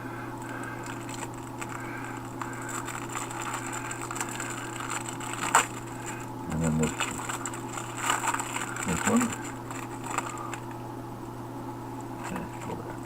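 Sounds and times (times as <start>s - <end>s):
electrical hum: 0.0s - 13.0s
trading cards being handled: 0.4s - 10.8s.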